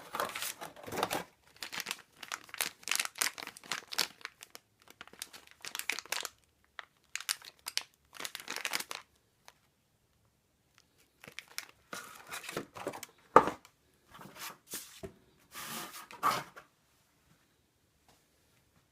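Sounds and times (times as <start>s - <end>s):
packaging crinkling and tearing: 0.0s - 9.6s, 10.8s - 13.1s.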